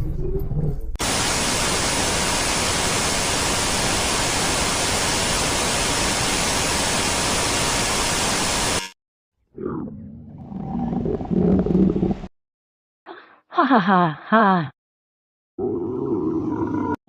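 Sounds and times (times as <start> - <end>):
loud radio static hiss: 1.0 - 9.0.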